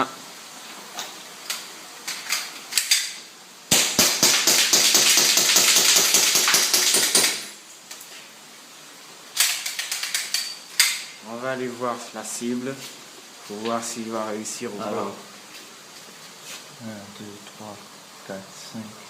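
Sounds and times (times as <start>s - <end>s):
airsoft gun automatic burst: 3.7s - 7.5s.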